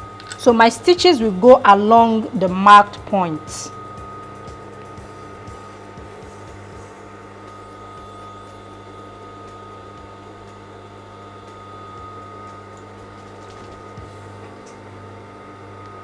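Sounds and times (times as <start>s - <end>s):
steady electrical hum: 0.0s - 16.0s.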